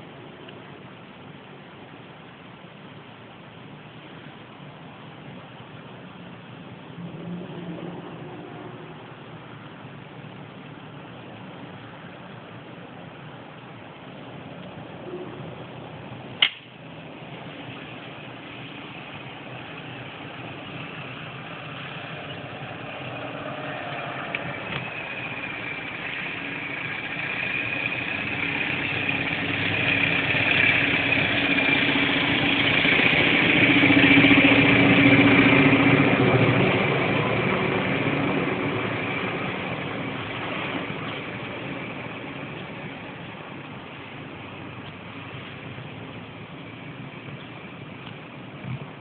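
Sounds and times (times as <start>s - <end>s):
droning engine-like hum with whine: 0.0s - 49.0s.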